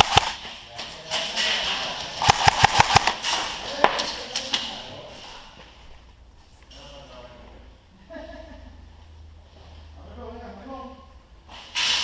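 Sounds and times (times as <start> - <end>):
airsoft guns firing: 0.0 - 0.6, 1.3 - 4.1.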